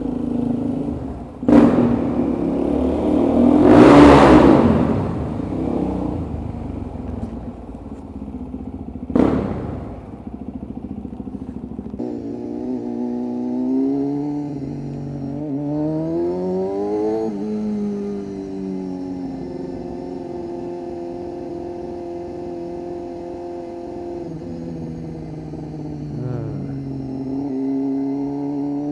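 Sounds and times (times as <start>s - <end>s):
motorcycle engine running: 0.0s - 28.9s.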